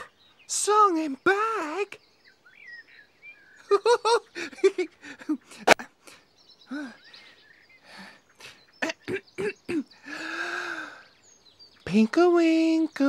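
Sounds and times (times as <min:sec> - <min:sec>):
faint birdsong: 0:00.0 - 0:13.0.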